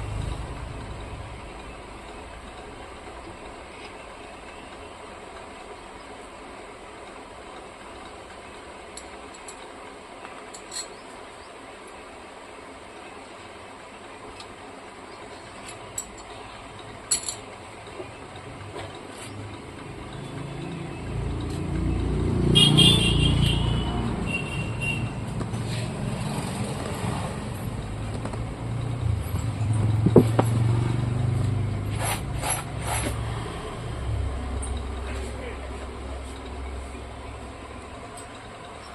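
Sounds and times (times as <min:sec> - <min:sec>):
vehicle engine rumbling: 0:00.0 - 0:38.9.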